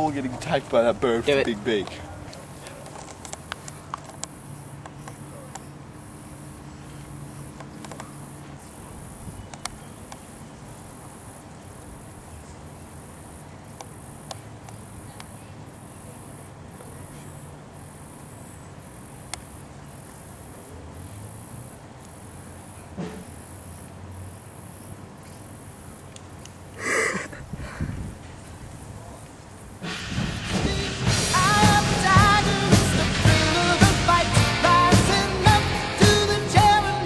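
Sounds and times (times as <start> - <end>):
insects chirping: 0.0 - 37.0
faint clicks: 1.8 - 5.7, 7.6 - 8.2, 9.5 - 10.3.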